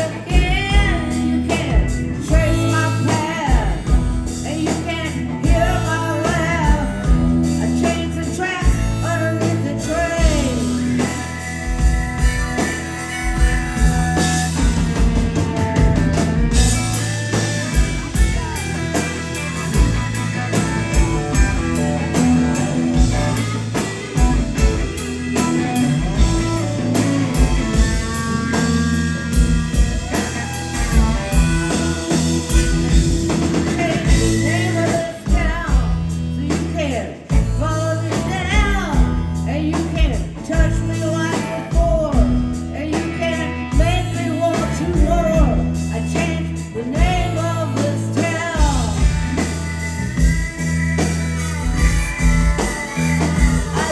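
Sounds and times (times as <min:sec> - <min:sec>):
blues-rock band playing: 0:00.0 - 0:53.9
person singing: 0:30.0 - 0:49.2, 0:51.6 - 0:53.9.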